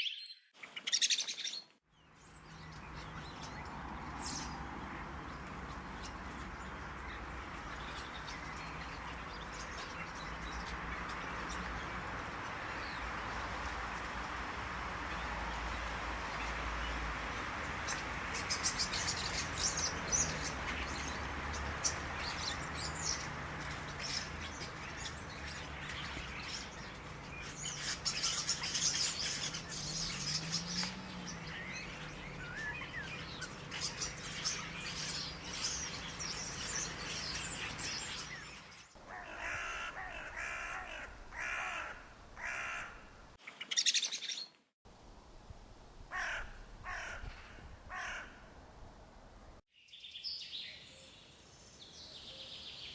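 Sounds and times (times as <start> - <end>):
songbirds chirping and singing: 0.0 - 13.8, 17.7 - 41.8, 49.8 - 52.9.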